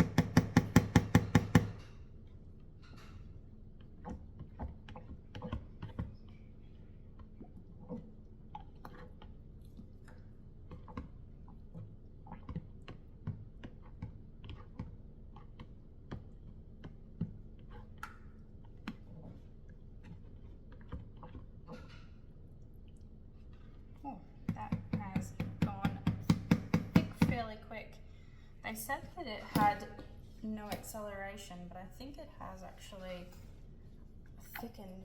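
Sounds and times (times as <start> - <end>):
stirring thick batter: 0.0 - 27.4
faint steady hum: 0.0 - 35.0.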